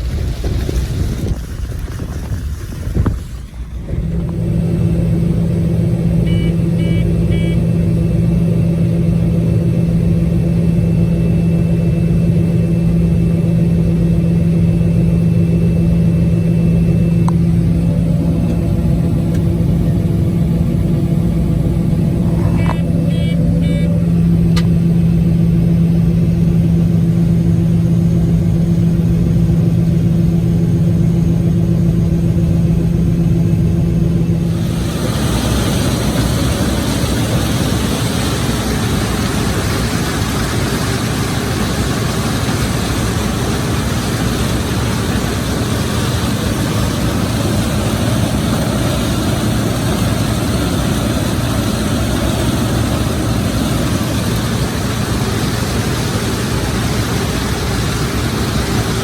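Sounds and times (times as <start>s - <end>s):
heavy vehicle engine running: 0.0s - 59.0s
electronic beeps: 6.2s - 7.6s, 22.3s - 24.2s.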